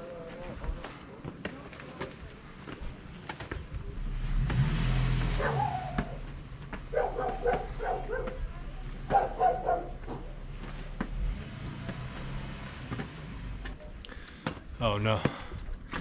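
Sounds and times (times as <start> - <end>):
car passing: 3.8 - 14.4
dog barking: 5.4 - 6.1, 6.9 - 8.5, 9.1 - 10.2.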